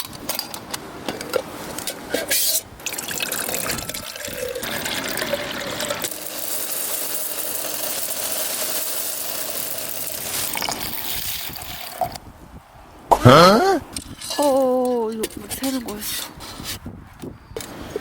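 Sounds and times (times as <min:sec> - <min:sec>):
liquid pouring: 0:02.8 - 0:12.2.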